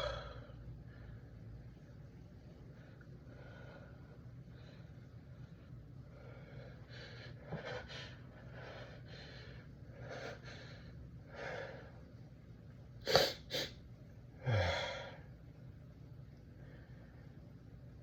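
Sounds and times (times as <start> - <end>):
person gasping breaths: 0.0 - 1.2, 14.4 - 15.2
person sneezing: 13.1 - 13.8.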